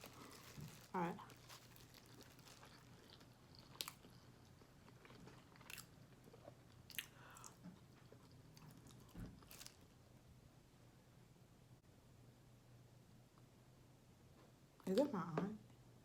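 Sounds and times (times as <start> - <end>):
chewing food: 0.0 - 9.9.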